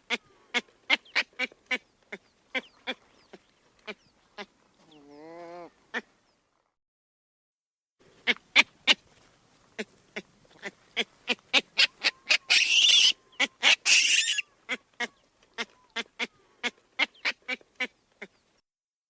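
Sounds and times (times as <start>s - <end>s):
baboon short sharp calls: 10.6s - 16.3s
baboon loud harsh calls: 11.0s - 16.3s.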